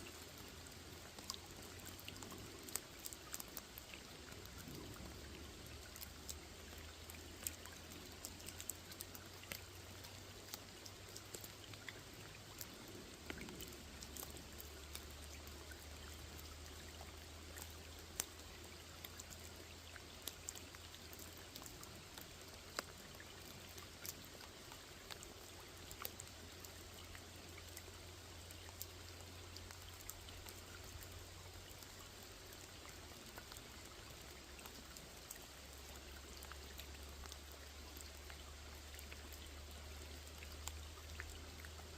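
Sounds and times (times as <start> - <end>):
rain hissing on pond: 0.0 - 41.9
raindrops ticking: 0.0 - 41.9.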